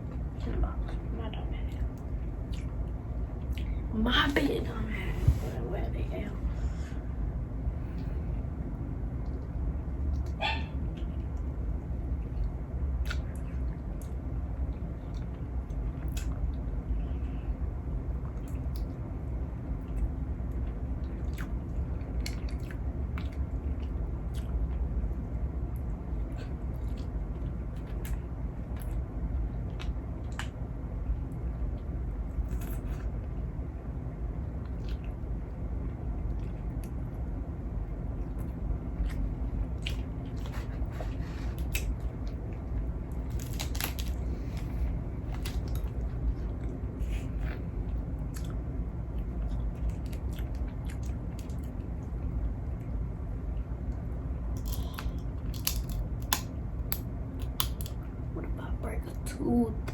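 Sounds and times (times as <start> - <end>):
low hum: 0.0 - 59.9
chewing: 21.0 - 24.6, 34.6 - 35.2, 38.2 - 48.6, 49.2 - 51.9
crab shell cracking: 43.2 - 44.7, 54.6 - 58.0.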